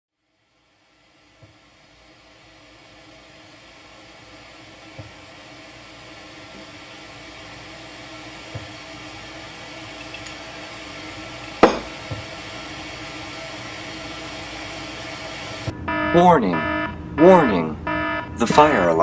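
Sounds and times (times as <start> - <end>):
steady low hum: 0.4 - 19.0
sharp knock: 11.6 - 12.2
soft thumps: 11.6 - 12.3.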